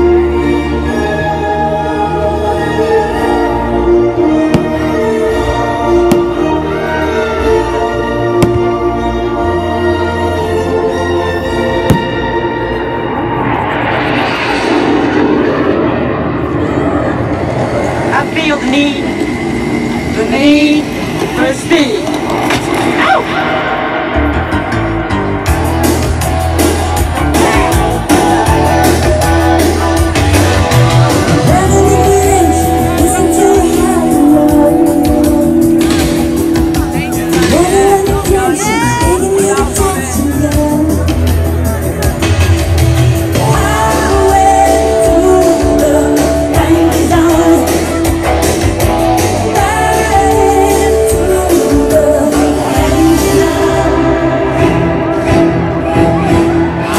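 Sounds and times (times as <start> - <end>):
rock music with singing: 0.0 - 56.9
person singing: 30.6 - 41.5, 43.3 - 48.6, 49.2 - 55.1.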